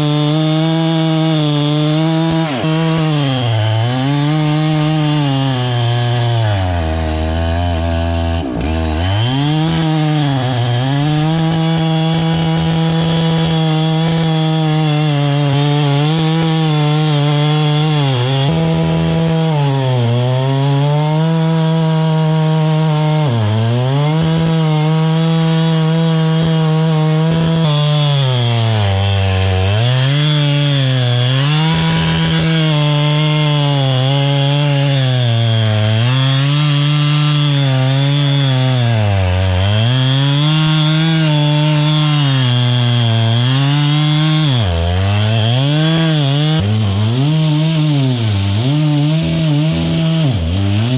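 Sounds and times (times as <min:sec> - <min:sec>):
chainsaw cutting log: 0:00.0 - 0:50.9.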